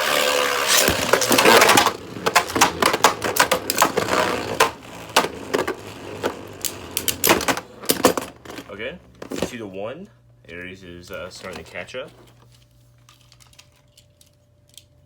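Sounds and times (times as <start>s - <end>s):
spinning tops whirring: 0.0s - 9.4s
spinning tops clicking and clacking: 0.1s - 8.4s.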